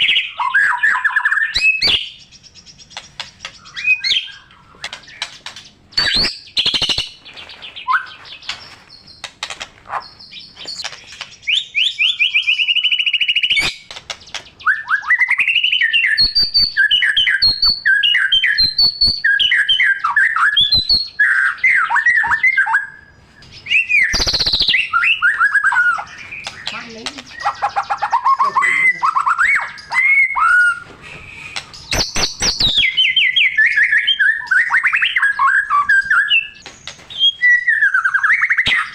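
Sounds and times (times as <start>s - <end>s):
songbird whistling song: 0.0s - 38.9s
sharp clicking bird notes: 0.6s - 14.7s, 16.0s - 19.4s, 23.4s - 33.0s, 35.9s - 37.4s, 38.4s - 38.9s.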